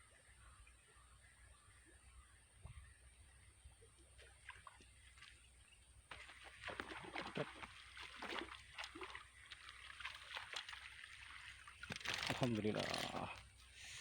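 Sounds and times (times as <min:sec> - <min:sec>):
fish splashing and thrashing in water: 0:06.1 - 0:13.6.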